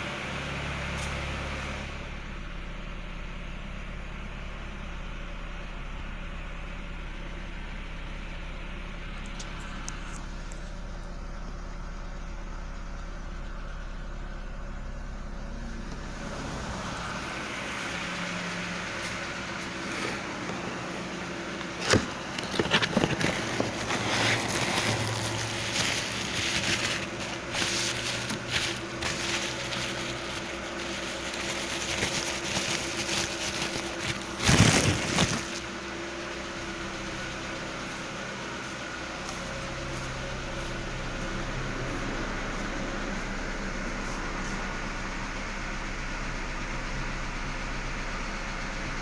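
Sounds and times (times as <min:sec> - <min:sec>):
car engine idling: 0:00.0 - 0:49.0.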